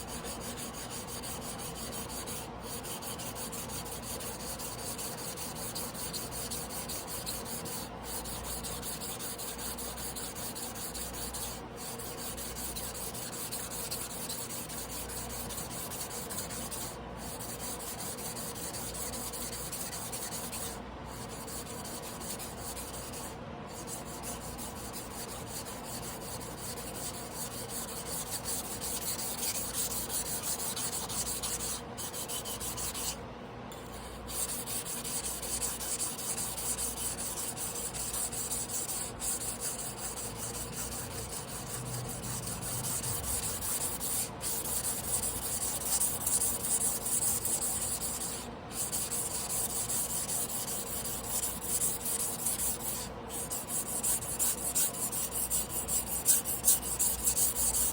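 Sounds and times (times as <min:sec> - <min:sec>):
knife scraping on a whetstone: 0:00.1 - 0:57.9.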